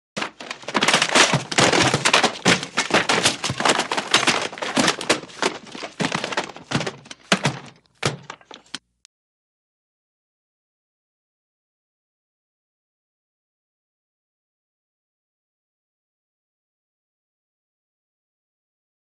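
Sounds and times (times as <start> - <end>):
objects clattering as they fall: 0.2 - 8.8.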